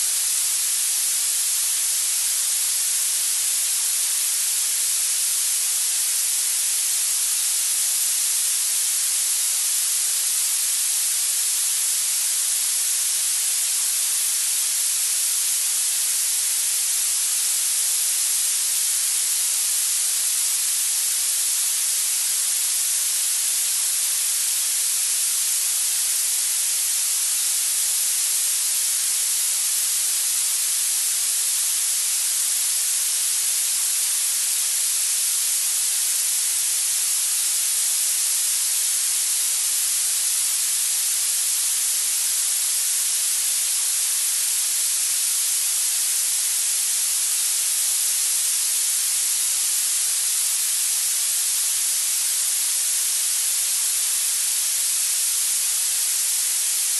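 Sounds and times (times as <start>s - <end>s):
synthetic noise hiss: 0.0s - 2.9s.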